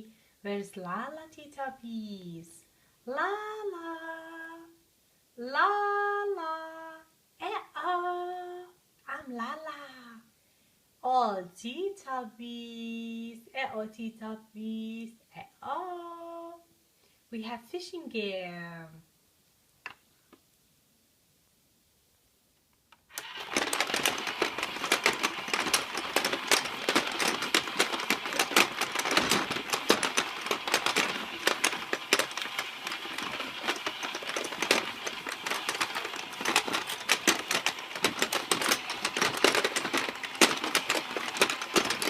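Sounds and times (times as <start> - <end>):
toy motor clattering gears: 23.1 - 42.0.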